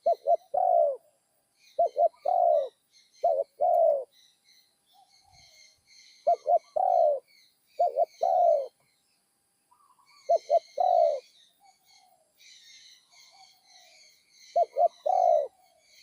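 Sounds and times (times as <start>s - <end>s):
dove cooing: 0.0s - 1.1s, 1.7s - 4.1s, 5.0s - 8.8s, 9.7s - 12.3s, 13.2s - 16.0s
small birds chirping: 0.0s - 16.0s.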